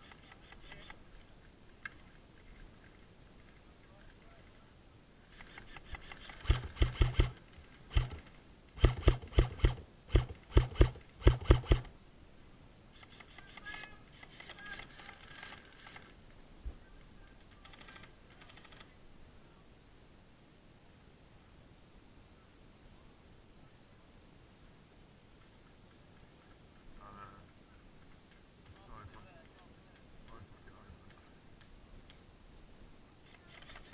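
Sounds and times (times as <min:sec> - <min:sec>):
airsoft rifle firing: 0:05.6 - 0:11.9.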